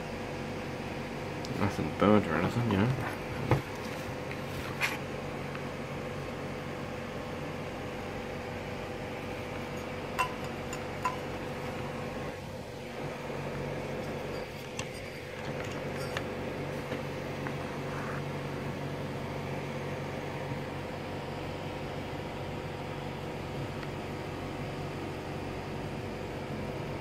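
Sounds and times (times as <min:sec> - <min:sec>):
steady background hum: 0:00.0 - 0:27.0
light clicks and clinks of metal parts: 0:09.7 - 0:11.4, 0:14.0 - 0:16.3.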